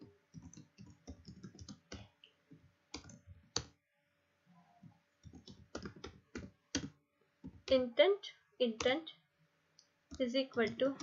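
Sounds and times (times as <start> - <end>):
typing on a keyboard: 0.3 - 2.1, 2.9 - 3.8, 5.2 - 7.8.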